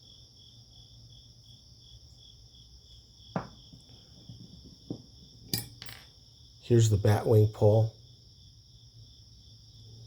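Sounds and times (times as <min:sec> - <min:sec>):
crickets chirping: 0:00.0 - 0:10.0
sharp knock on hard surface: 0:03.4 - 0:03.7.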